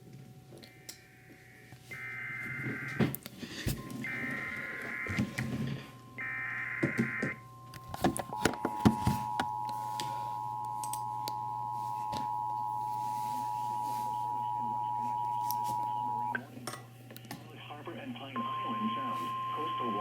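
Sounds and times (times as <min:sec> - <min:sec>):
two-tone attention signal: 0:18.4 - 0:20.0.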